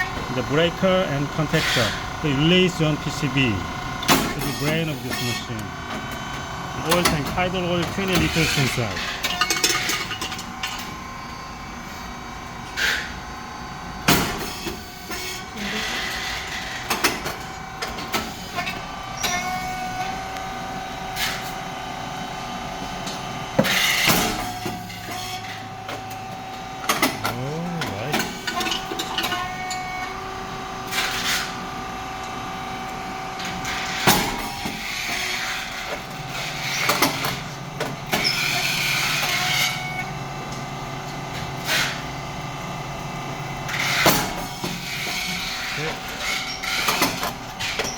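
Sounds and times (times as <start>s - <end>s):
valves clicking and clunking: 0.0s - 11.0s
hydraulic pump whine: 0.0s - 47.9s.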